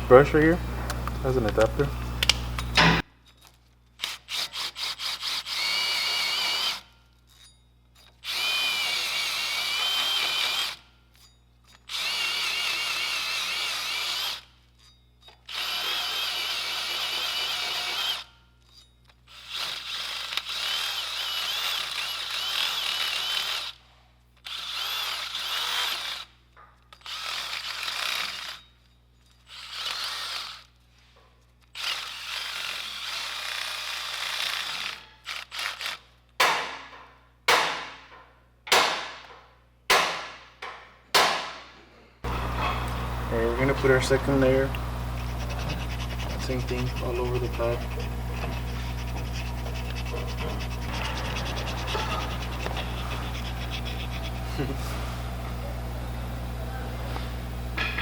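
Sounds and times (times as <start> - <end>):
power drill spinning brush: 4.0 - 14.8, 15.4 - 26.3, 27.0 - 36.0, 42.2 - 56.5.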